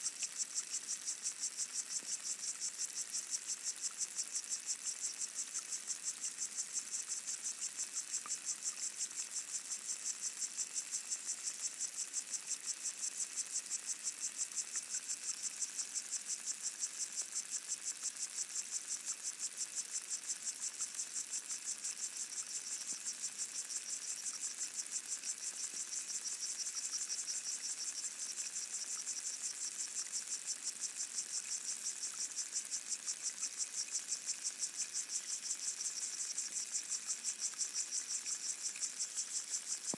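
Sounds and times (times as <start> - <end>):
faint ticks: 0.0 - 39.9
insects stridulating underwater: 0.0 - 39.9.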